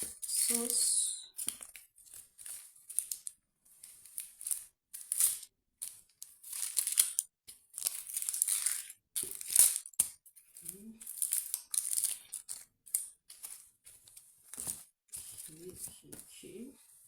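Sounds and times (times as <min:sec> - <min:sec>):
onion skin crinkling and tearing: 0:01.4 - 0:03.3, 0:04.0 - 0:05.5, 0:06.4 - 0:13.6.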